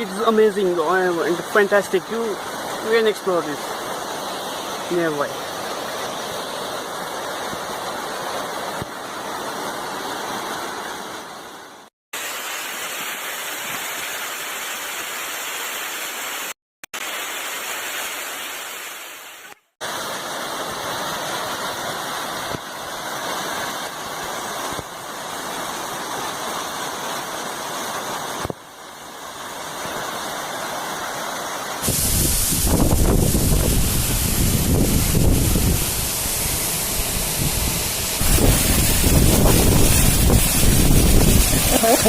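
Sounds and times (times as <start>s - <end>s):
waterfall rushing: 0.0s - 42.0s
wind buffeting microphone: 31.8s - 42.0s.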